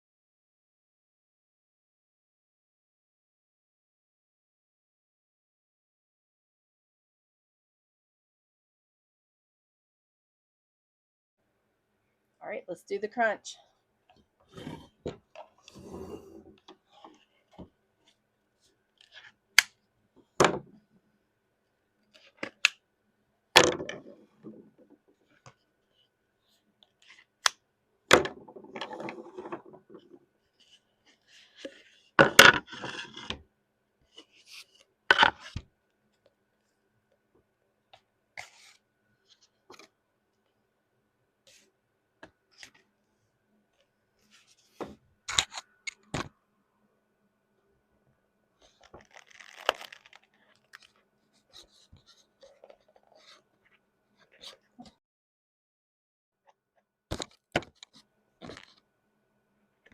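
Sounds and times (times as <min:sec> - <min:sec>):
stuck paper pages cracking apart: 0:48.7 - 0:50.9.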